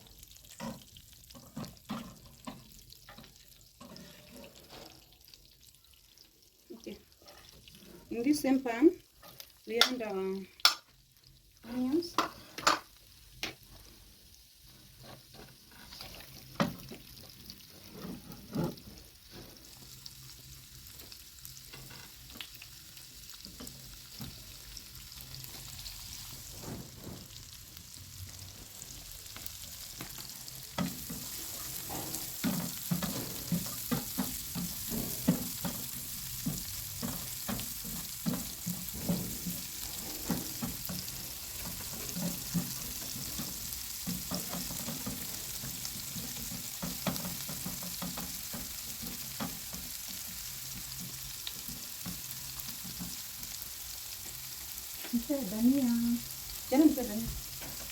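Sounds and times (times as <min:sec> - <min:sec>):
onions sizzling in oil: 0:00.0 - 0:57.9
spoon stirring and knocking pan: 0:00.4 - 0:05.1, 0:12.1 - 0:13.6, 0:15.0 - 0:20.0, 0:28.7 - 0:53.6.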